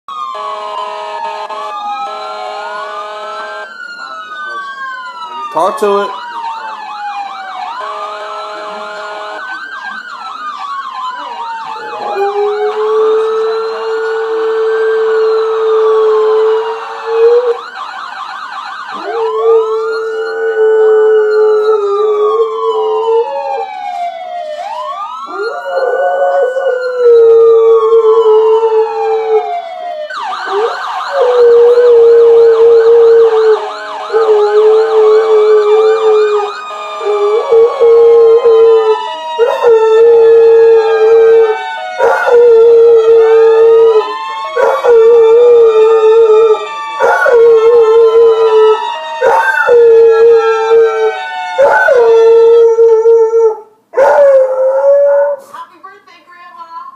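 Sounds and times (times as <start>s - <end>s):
police sirens wailing and yelping: 0.1s - 55.7s
dog howling: 11.8s - 17.6s, 25.3s - 29.5s, 30.5s - 55.5s.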